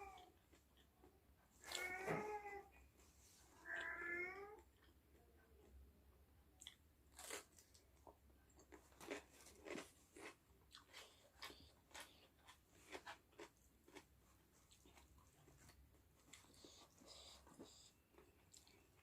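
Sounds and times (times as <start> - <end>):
crunchy chewing of fried chicken: 6.6 - 19.0.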